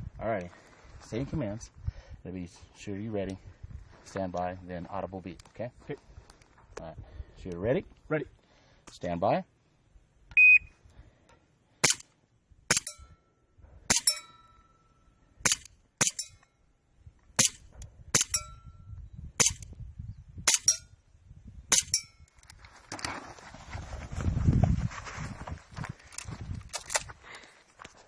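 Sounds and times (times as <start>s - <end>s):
airsoft gun shots: 11.8s - 12.0s, 12.7s - 13.0s, 15.5s - 16.2s, 17.4s - 18.4s, 19.4s - 19.6s, 20.5s - 20.8s, 21.7s - 22.0s
metallic ring of steel target: 11.8s - 12.0s, 12.7s - 13.3s, 13.9s - 16.6s, 17.4s - 19.7s, 20.4s - 21.0s, 21.7s - 22.3s.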